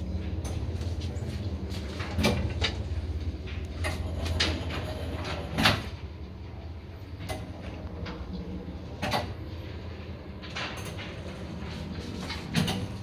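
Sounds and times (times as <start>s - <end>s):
mechanism clicks and knocks: 2.0s - 6.0s.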